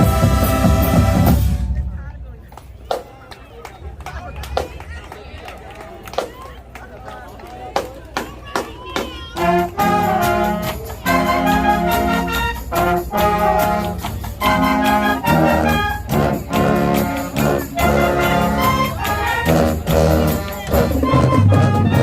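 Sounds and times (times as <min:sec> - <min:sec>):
trumpets and trombones: 0:00.0 - 0:01.9, 0:09.3 - 0:22.0
marching band playing: 0:00.0 - 0:03.2, 0:07.8 - 0:22.0.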